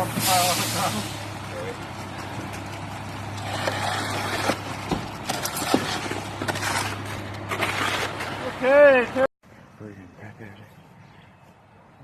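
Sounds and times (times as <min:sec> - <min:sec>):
truck engine running: 0:00.0 - 0:08.2
knocks and scraping: 0:00.0 - 0:08.8.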